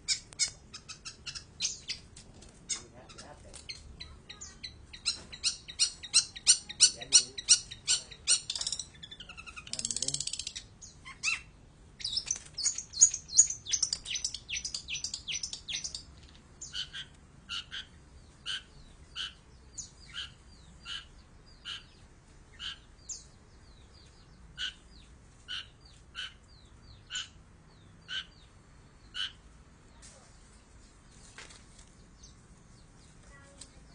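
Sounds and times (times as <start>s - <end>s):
shrike calling: 2.7s - 22.0s.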